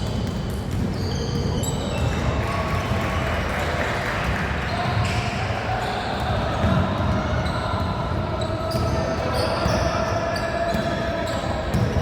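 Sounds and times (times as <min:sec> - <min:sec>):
basketball bouncing on gym court: 0:00.0 - 0:03.0, 0:03.6 - 0:12.0.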